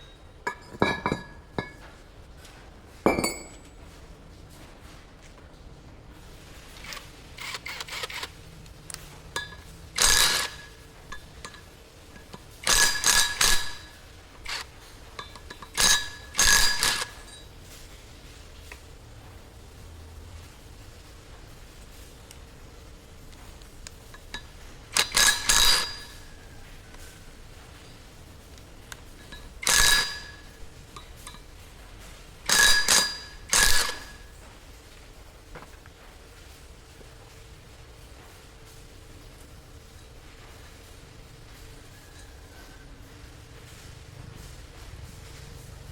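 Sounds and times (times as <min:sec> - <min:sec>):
light metal clinks: 0:00.0 - 0:04.0
metal-on-metal clanks: 0:00.0 - 0:04.0, 0:09.0 - 0:17.8, 0:23.9 - 0:28.1, 0:28.9 - 0:34.5
metal-on-metal strikes: 0:03.1 - 0:03.7.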